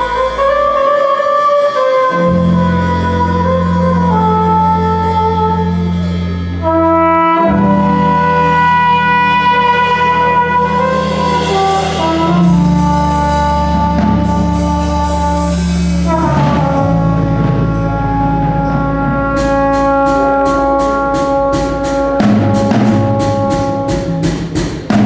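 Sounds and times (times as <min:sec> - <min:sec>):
bass rhythm section: 0:00.0 - 0:25.0
trumpet and trombone chords: 0:00.0 - 0:25.0.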